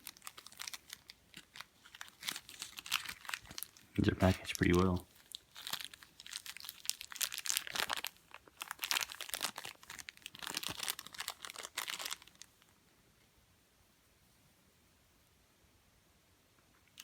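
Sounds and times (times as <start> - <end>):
packaging crinkling: 0.0 - 12.7.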